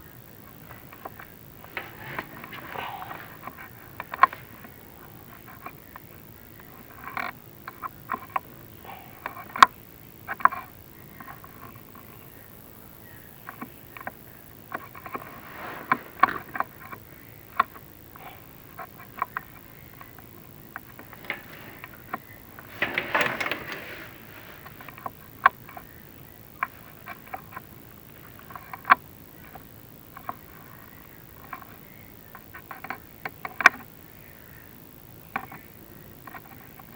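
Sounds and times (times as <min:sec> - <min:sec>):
camera scraping masonry: 0:00.5 - 0:05.8, 0:13.5 - 0:17.8, 0:18.7 - 0:25.8.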